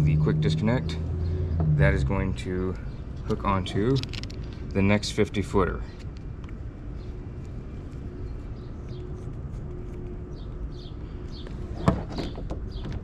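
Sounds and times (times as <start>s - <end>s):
low background rumble: 0.0s - 13.0s.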